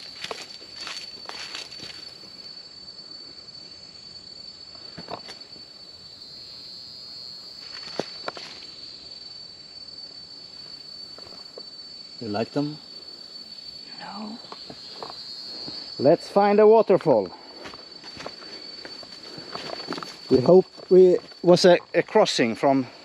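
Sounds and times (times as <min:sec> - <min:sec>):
footsteps or twig snaps: 0:00.0 - 0:02.1
insects buzzing: 0:00.0 - 0:23.0.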